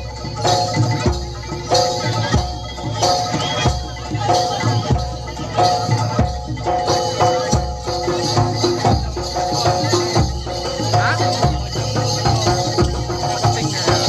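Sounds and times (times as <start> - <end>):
high jingling shimmer: 0.0 - 14.0
ringing pitched percussion: 0.0 - 14.0.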